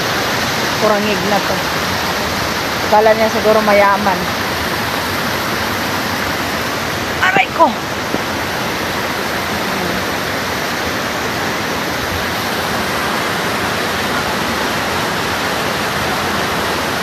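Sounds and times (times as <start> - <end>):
rushing water: 0.0 - 17.0.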